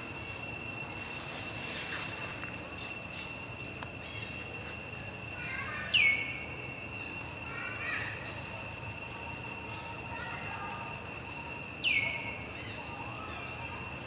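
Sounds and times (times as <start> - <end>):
high-pitched insect drone: 0.0 - 14.0.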